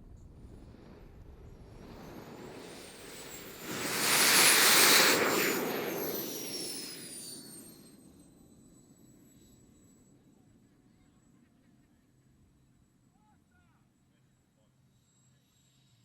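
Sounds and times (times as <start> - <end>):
small jet engine passing by: 0.0 - 8.2.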